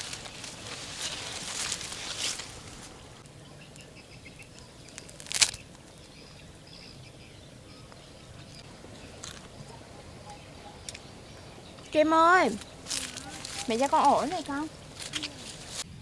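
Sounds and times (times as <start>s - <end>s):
faint bird chirps: 3.3s - 15.8s.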